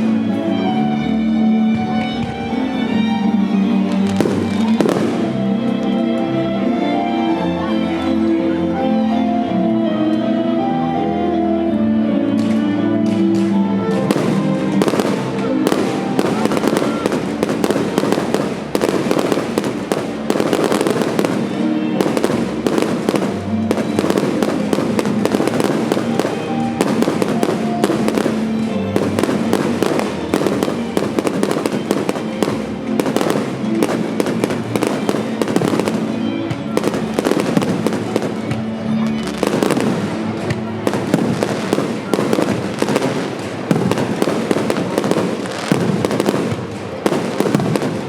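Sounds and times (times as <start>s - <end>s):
music with sustained tones: 0.0s - 48.0s
fireworks bursting and crackling: 3.8s - 6.0s, 13.0s - 48.0s.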